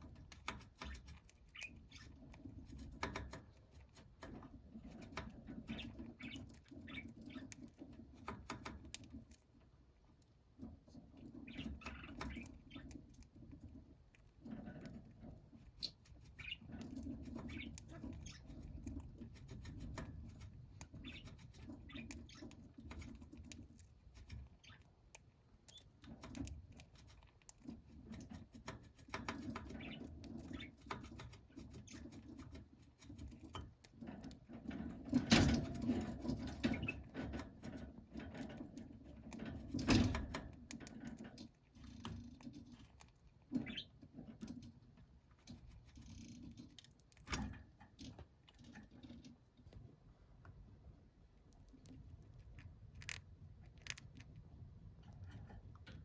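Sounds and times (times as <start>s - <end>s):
birds scratching and pecking: 0.0s - 56.0s
soft bird chirps: 0.4s - 3.4s, 4.4s - 8.5s, 11.2s - 13.3s, 14.4s - 23.6s, 24.2s - 25.0s, 25.6s - 26.4s, 28.0s - 32.6s, 43.5s - 44.8s.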